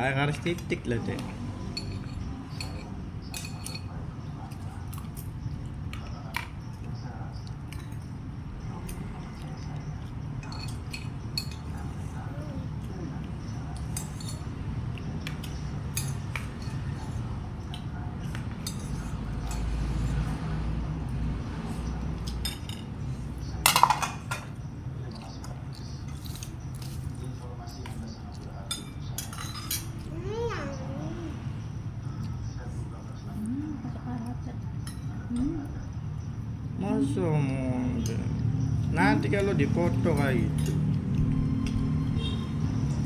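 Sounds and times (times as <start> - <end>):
cutlery clinking against bowl: 1.7 - 8.2, 8.9 - 12.0, 13.4 - 20.4, 22.1 - 30.1, 39.4 - 41.8.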